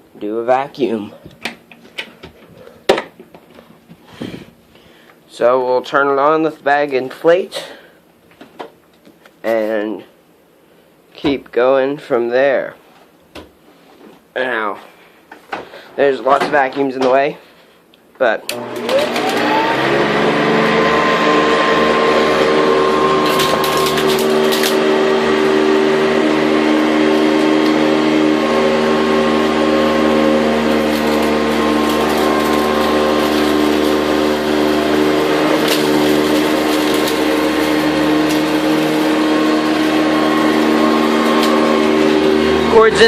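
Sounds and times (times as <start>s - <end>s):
vacuum cleaner running: 18.5s - 43.0s.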